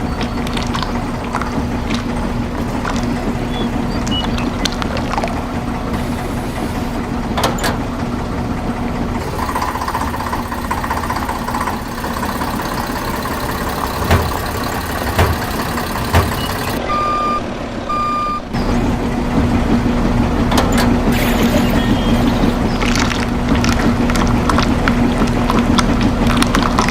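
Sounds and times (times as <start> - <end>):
toy truck motor hum: 0.0 - 16.8, 20.3 - 26.9
sharp knocks: 9.2 - 16.8
electronic reversing beeps: 9.2 - 18.8.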